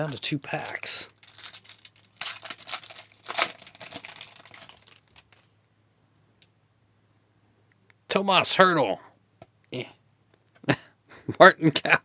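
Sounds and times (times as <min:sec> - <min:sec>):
wrapper tearing and crinkling: 0:00.0 - 0:05.5.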